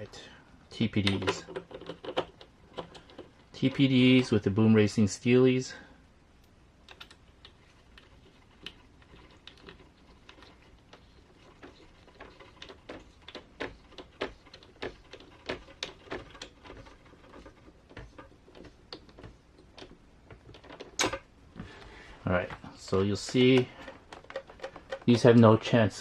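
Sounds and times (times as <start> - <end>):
plastic and metal parts clicking: 1.0 - 4.3, 6.9 - 21.3, 22.8 - 25.6.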